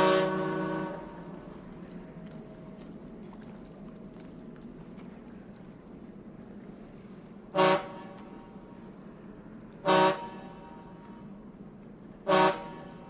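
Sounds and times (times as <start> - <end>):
train horn blasts: 0.0 - 1.5, 7.5 - 8.6, 9.8 - 11.3, 12.2 - 13.0
low rumble: 0.0 - 13.0.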